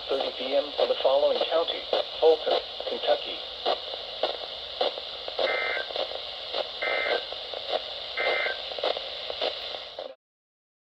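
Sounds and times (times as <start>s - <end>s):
radio static hiss: 0.0s - 10.2s
two-tone digital squawks: 5.5s - 5.9s, 6.8s - 7.2s, 8.2s - 8.6s.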